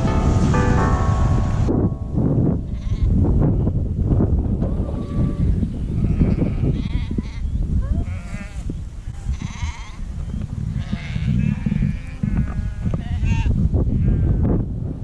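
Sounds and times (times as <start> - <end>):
low rumble: 0.0 - 6.8
sheep bleating: 2.8 - 3.2, 4.9 - 8.6, 9.3 - 10.0.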